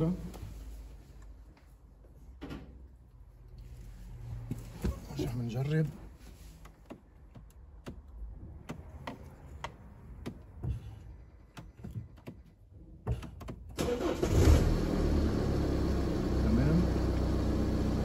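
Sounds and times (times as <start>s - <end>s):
car engine starting and idling: 13.4s - 18.0s.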